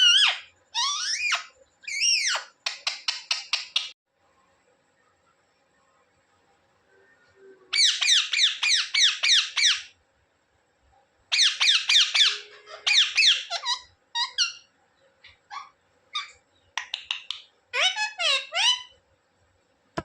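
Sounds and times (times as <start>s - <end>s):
parakeet squawking: 0.0s - 3.9s, 7.7s - 9.9s, 11.3s - 19.0s.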